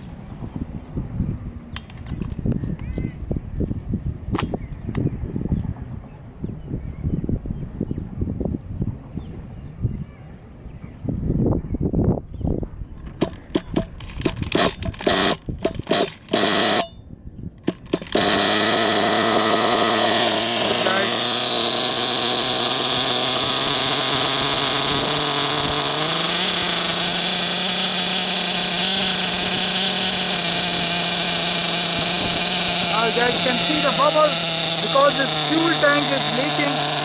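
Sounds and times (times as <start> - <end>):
nitro engine sputtering and running: 13.1 - 17.0, 17.6 - 37.0.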